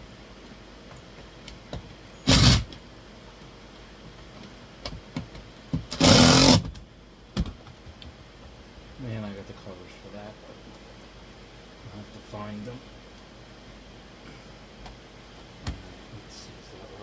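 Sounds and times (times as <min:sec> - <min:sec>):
cordless drill driving screw: 0:02.3 - 0:02.8, 0:05.9 - 0:06.7.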